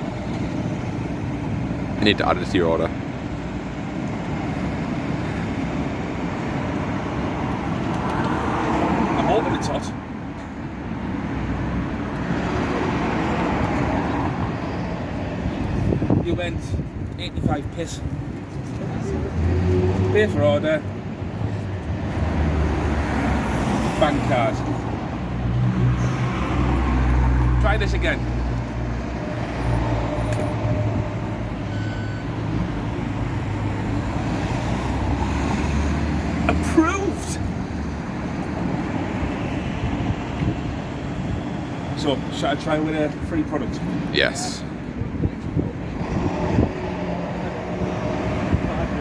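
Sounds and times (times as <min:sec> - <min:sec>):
street traffic rumble: 0:00.0 - 0:49.0
short electronic beep: 0:31.7 - 0:32.3.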